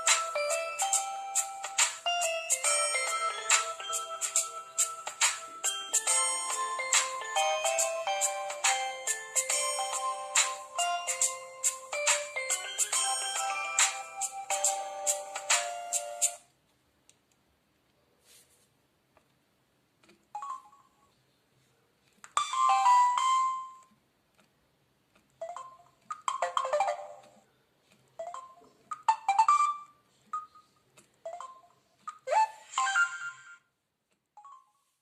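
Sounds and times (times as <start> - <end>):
phone message alert tones: 20.4 - 20.9, 31.3 - 31.7.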